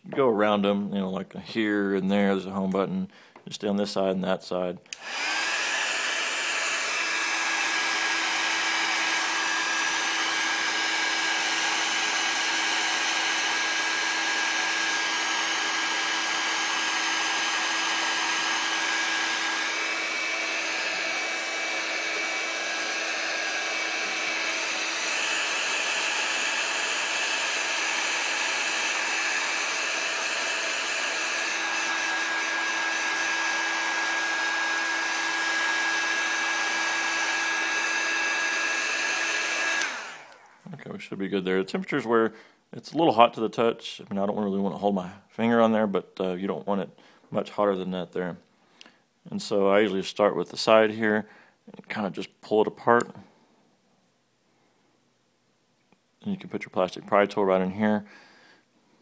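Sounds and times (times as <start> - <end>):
heat tool blowing air: 4.9 - 40.7.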